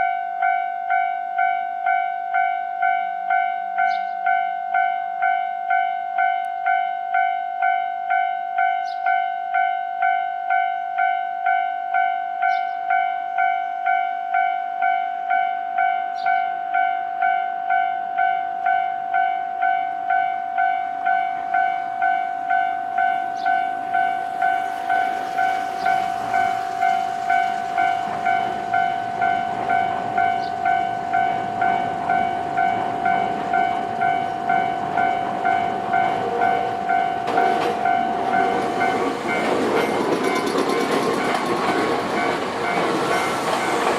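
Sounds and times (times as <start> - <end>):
level crossing warning bell: 0.0 - 43.9
train rumbling: 19.6 - 43.9.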